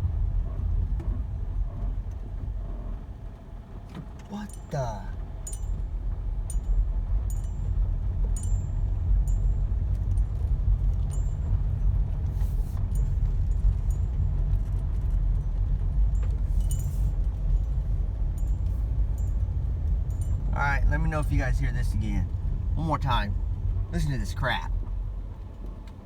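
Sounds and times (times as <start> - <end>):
car road and drivetrain rumble: 0.0 - 26.0
light metallic clinks: 5.4 - 5.8, 16.1 - 20.5.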